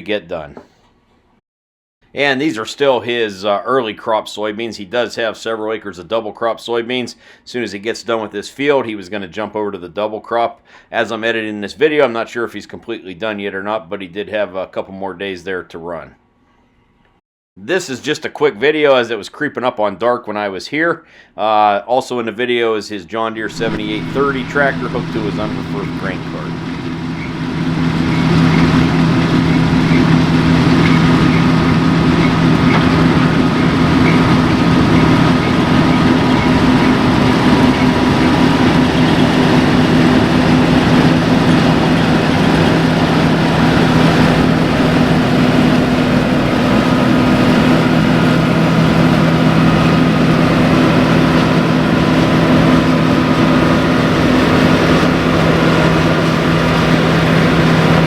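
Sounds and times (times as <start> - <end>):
diesel farm machinery engine drone: 23.5 - 58.0.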